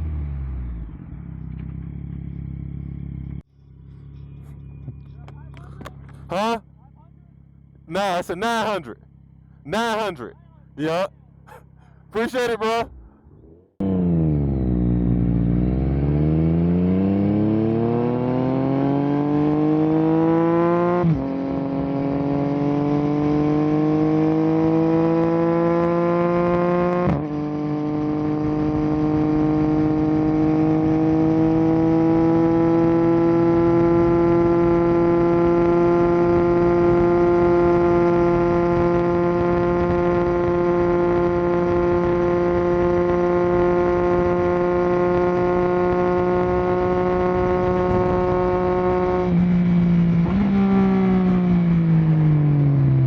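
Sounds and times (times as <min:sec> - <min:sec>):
motorcycle engine accelerating: 0:12.9 - 0:53.0.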